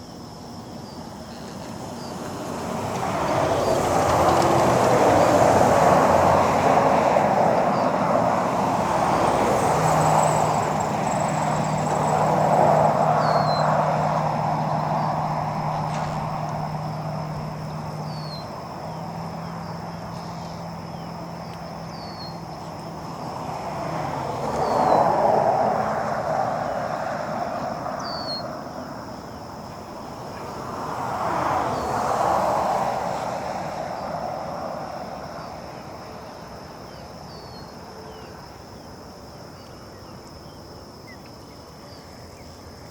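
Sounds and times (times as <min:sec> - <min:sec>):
passing vehicles: 0:00.0 - 0:42.9
low engine hum: 0:00.8 - 0:35.9
bird chirp: 0:13.2 - 0:13.7, 0:17.7 - 0:18.5, 0:19.4 - 0:22.7, 0:28.0 - 0:28.5.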